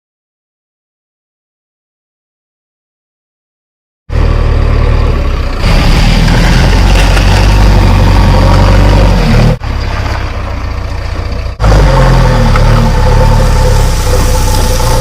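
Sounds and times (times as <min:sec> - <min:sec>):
diesel engine droning: 0:04.1 - 0:15.0.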